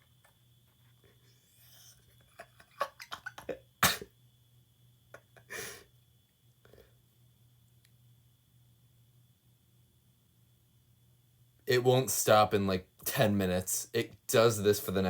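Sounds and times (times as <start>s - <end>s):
loud breathy bursts: 5.5s - 5.9s.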